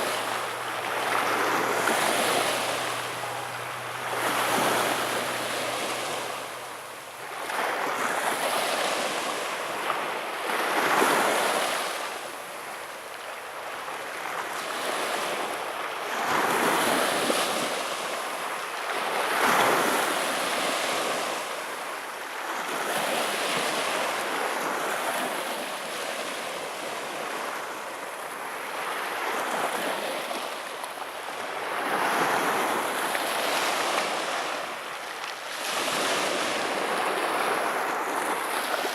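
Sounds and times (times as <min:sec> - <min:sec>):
surf breaking on shore: 0:00.0 - 0:12.9, 0:22.6 - 0:38.9.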